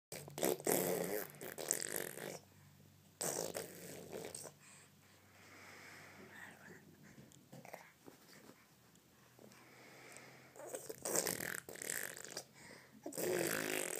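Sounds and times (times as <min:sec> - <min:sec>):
breathy noise: 0:04.2 - 0:13.9.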